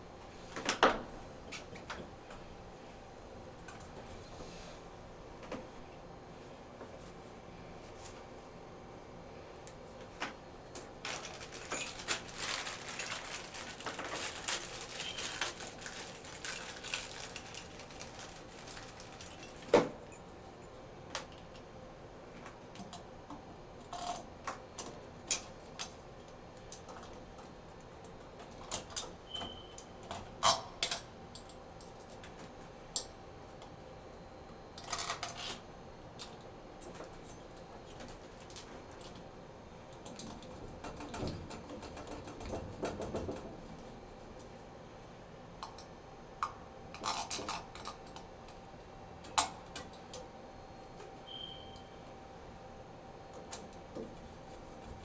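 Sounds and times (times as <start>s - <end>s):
small metal parts clicking and rattling: 11.0s - 20.3s.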